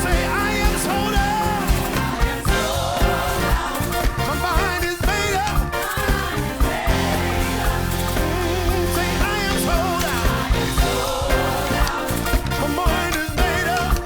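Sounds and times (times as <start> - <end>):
gospel singing: 0.0 - 14.0
steady drum beat: 0.0 - 14.0.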